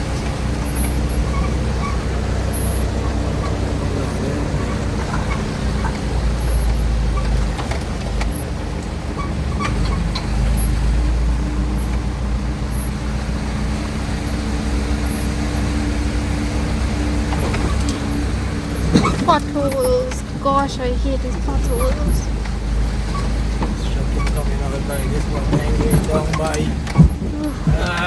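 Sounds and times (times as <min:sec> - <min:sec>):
car engine and tyres rumbling: 0:00.0 - 0:28.0
light knocks and rattles: 0:17.0 - 0:28.0.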